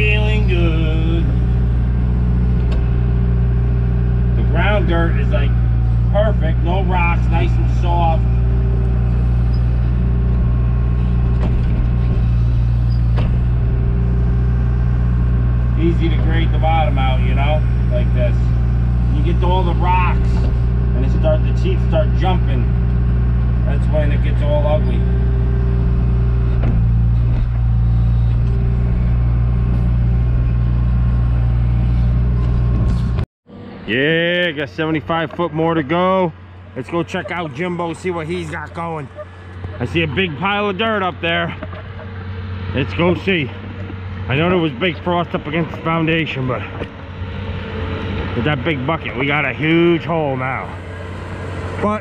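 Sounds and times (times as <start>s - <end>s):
diesel engine running: 0.0s - 52.0s.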